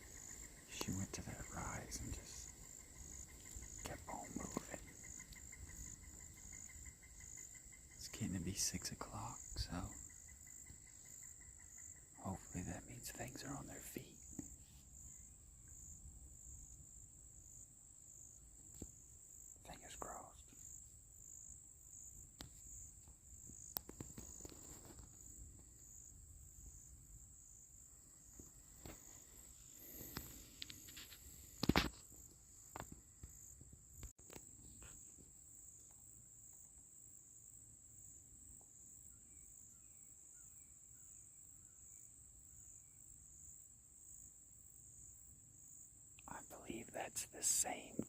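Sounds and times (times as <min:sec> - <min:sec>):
insects chorus: 0:00.0 - 0:48.0
faint clicks: 0:23.6 - 0:25.1, 0:29.9 - 0:32.1
small rustles: 0:23.6 - 0:25.8, 0:28.3 - 0:33.0.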